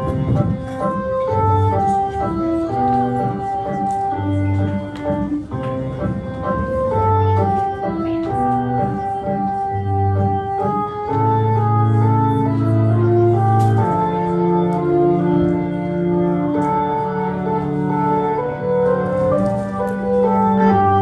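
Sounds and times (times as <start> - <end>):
organ music: 0.0 - 21.0.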